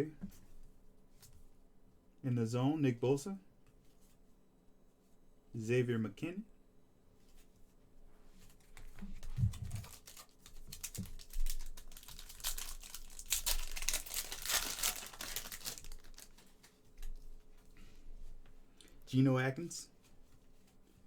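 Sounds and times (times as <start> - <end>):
foil wrapper crinkling and tearing: 9.4 - 17.2.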